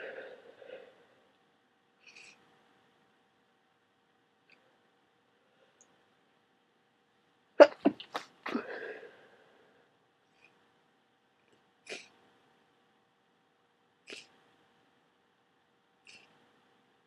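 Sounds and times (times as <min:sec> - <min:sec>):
person sneezing wetly: 0:07.6 - 0:09.0.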